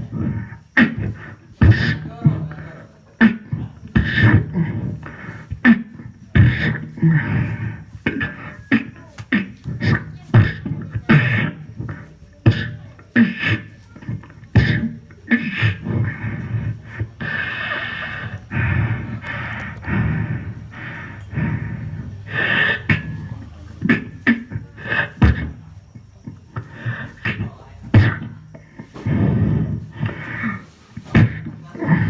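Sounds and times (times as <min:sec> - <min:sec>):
person beatboxing: 0:23.8 - 0:32.0.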